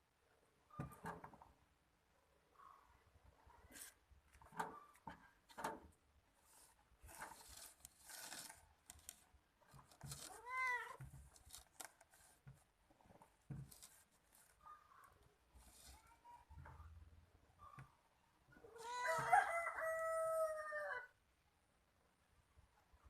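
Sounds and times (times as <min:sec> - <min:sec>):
faint clicks and rustles: 0:02.6 - 0:18.7
cat meowing: 0:10.3 - 0:11.0, 0:18.7 - 0:19.3.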